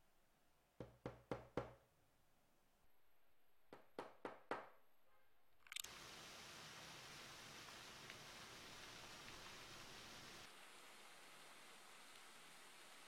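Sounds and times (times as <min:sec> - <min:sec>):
knocking on a hard surface: 0:00.8 - 0:01.8, 0:03.7 - 0:04.7
steady hiss: 0:05.8 - 0:13.0.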